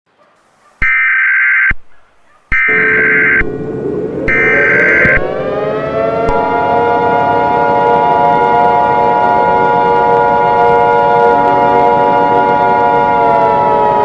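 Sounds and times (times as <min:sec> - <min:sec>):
raspy digital data tones: 0:02.6 - 0:03.6, 0:04.3 - 0:05.2
two-tone attention signal: 0:02.6 - 0:06.6
layered tone rising in pitch: 0:02.6 - 0:14.0.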